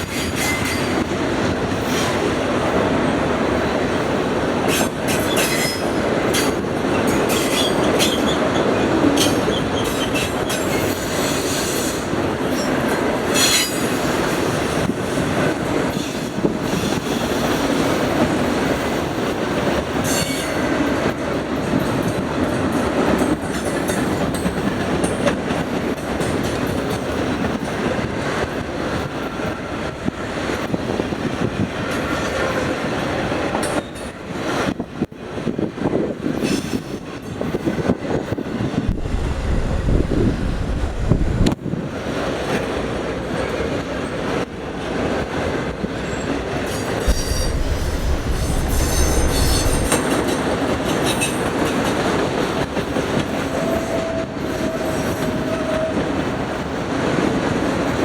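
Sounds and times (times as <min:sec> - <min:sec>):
train wheels rumbling on rail: 0:00.0 - 0:58.0
high wheel squeals: 0:46.2 - 0:50.0.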